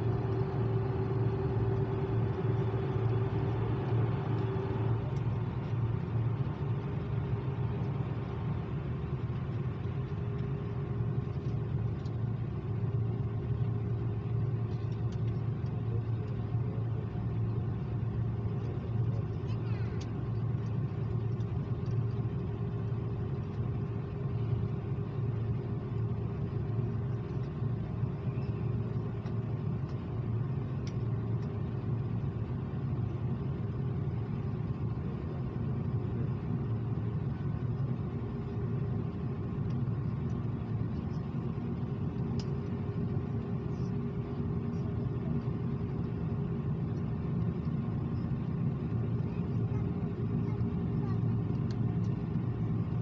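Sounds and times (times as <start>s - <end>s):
aircraft cabin drone: 0.0s - 53.0s
faint steady hum: 0.0s - 53.0s
light ticks: 18.6s - 22.0s, 30.8s - 31.6s, 42.1s - 42.7s, 51.5s - 52.2s.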